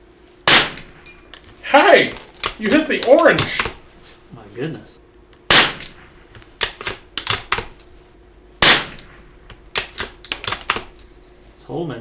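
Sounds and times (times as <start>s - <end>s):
rifle shots: 0.4s - 1.0s, 5.5s - 7.8s, 8.6s - 10.9s
rifle bolt metallic clicks: 6.6s - 7.9s, 9.7s - 11.1s.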